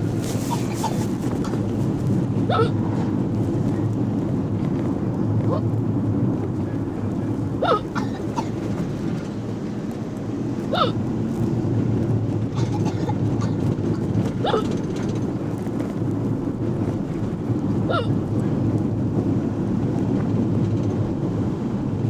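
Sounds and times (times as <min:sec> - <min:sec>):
low rumble of moving bus: 0:00.0 - 0:22.0
person hiccuping: 0:00.5 - 0:01.1, 0:02.5 - 0:02.8, 0:05.5 - 0:05.7, 0:07.6 - 0:08.6, 0:10.7 - 0:11.0, 0:14.4 - 0:14.8, 0:17.9 - 0:18.2.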